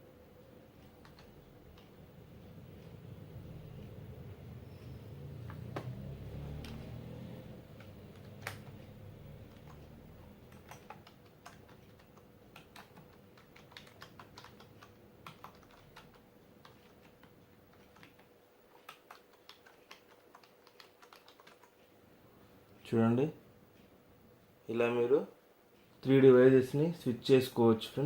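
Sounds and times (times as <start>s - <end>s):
keyboard keys clicking: 0.8s - 1.9s, 7.7s - 21.8s.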